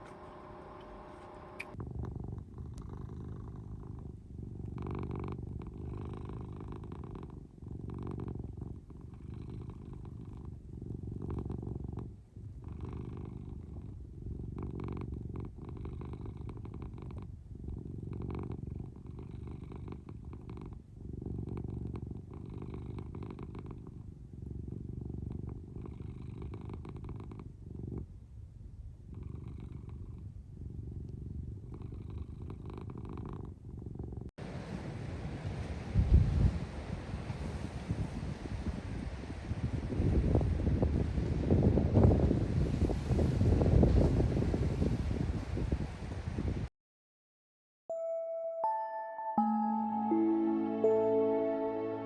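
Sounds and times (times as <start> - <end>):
cat purring: 0.0 - 34.3.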